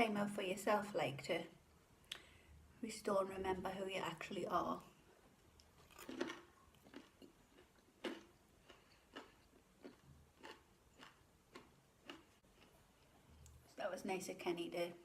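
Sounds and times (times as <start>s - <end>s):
person chewing food: 5.1s - 13.6s.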